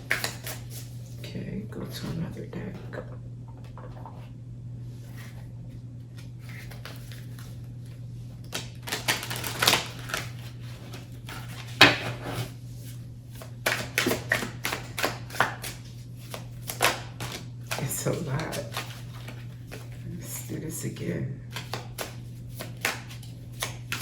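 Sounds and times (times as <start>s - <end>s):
steady low hum: 0.0s - 24.0s
cards being shuffled: 6.2s - 12.5s, 13.3s - 20.0s, 21.5s - 24.0s.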